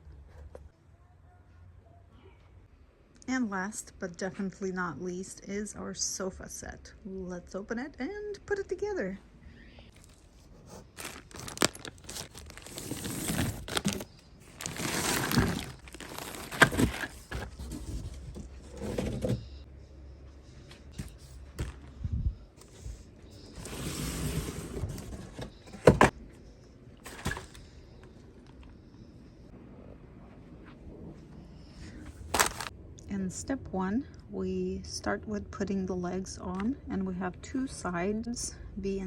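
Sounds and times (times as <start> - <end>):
cardboard tearing and rustling: 10.0 - 19.4, 32.3 - 32.7.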